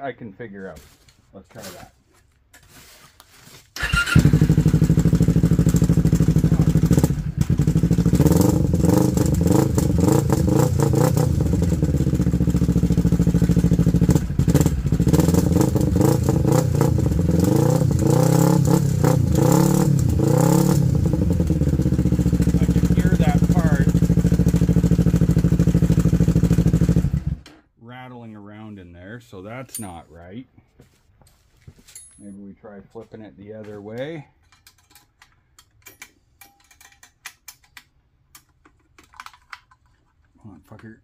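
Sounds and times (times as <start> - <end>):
motorcycle engine revving: 3.8 - 27.4
silencer insert rattling: 34.5 - 40.2.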